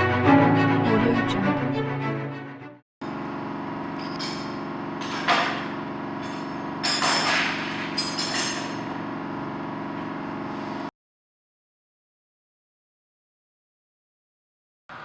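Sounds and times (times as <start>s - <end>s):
steady machine hum: 3.0s - 10.9s
metal tools knocking and scraping: 4.0s - 8.9s.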